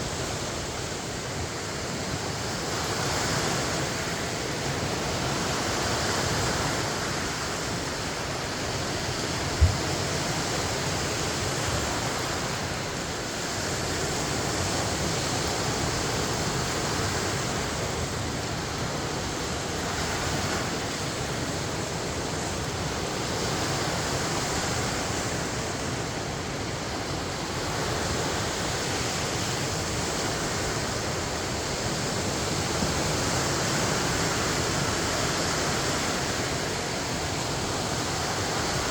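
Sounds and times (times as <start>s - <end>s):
waves washing onto shore: 0.0s - 38.9s
low thump: 9.6s - 9.9s.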